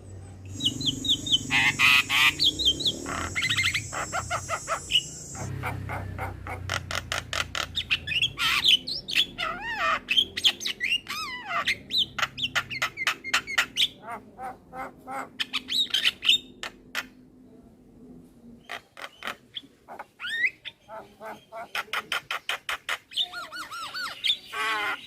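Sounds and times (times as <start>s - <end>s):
myna calling: 0.4s - 12.8s.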